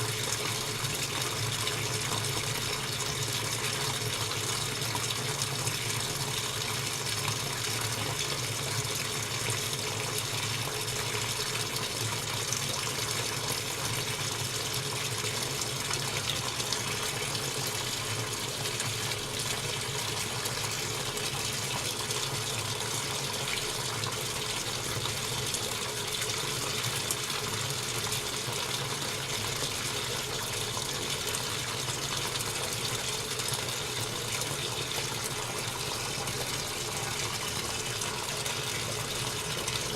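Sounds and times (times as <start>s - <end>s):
washing machine running: 0.0s - 39.9s.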